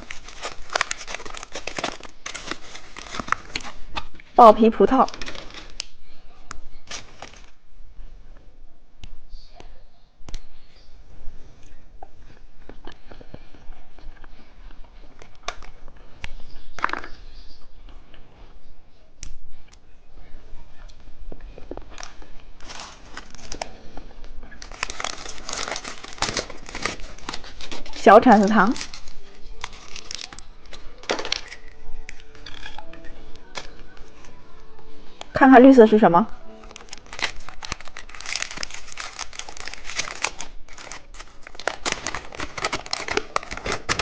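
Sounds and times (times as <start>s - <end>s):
plastic wrapper crinkling and tearing: 0.0s - 6.0s, 6.8s - 7.6s, 15.0s - 15.9s, 21.6s - 23.8s, 24.4s - 34.3s, 36.6s - 44.0s.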